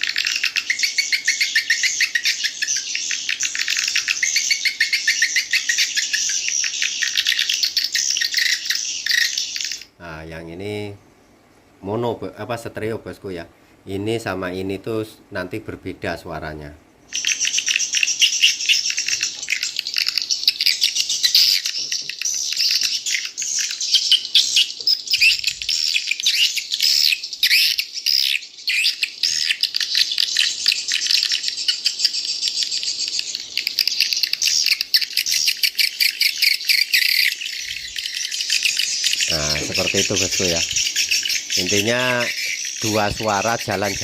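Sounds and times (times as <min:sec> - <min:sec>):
high-pitched swiftlet twittering: 0:17.1 - 0:44.0.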